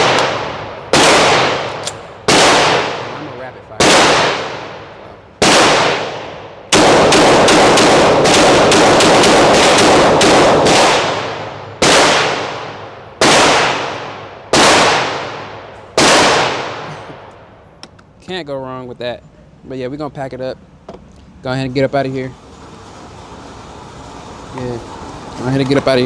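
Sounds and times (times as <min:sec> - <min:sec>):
pistol shots echoing: 0:00.0 - 0:16.9.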